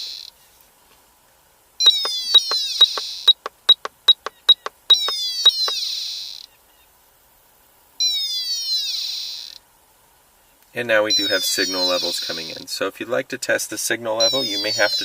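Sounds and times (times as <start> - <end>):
electronic chirping sweeps: 1.8 - 5.7
sharp clicks: 1.8 - 5.8.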